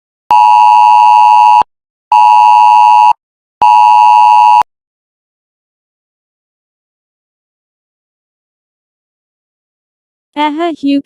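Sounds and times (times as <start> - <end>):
phone alert long beeps: 0.3 - 4.7.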